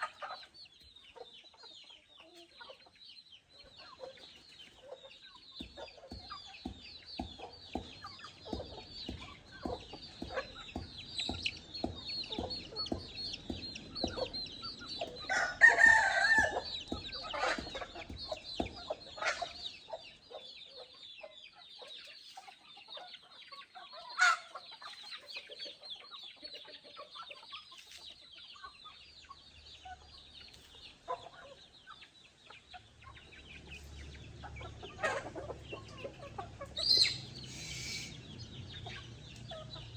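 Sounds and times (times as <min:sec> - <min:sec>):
chickens clucking: 0:00.0 - 0:39.9
loud chicken call: 0:15.0 - 0:19.6, 0:36.8 - 0:38.2.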